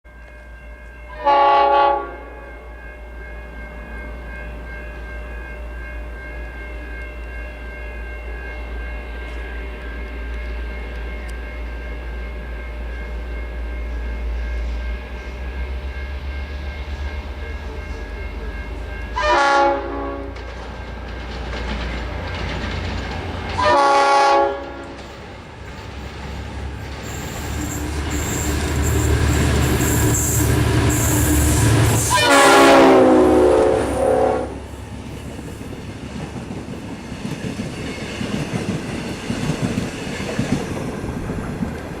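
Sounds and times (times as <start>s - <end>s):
diesel locomotive engine: 0.1s - 42.0s
train horn blasts: 1.0s - 2.8s, 19.1s - 20.4s, 23.6s - 25.0s, 27.4s - 34.8s
wheels clattering over rail joints: 20.3s - 23.7s.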